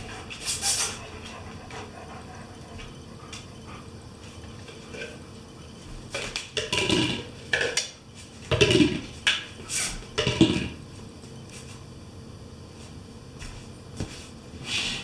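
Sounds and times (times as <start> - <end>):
hard objects clattering: 6.2 - 9.4.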